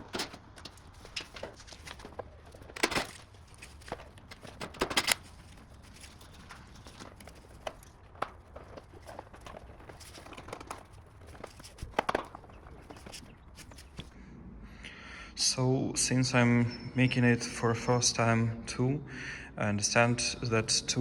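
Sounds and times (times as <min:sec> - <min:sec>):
hand tools clicking and knocking: 0:00.0 - 0:14.1
plastic parts being handled: 0:00.0 - 0:14.1.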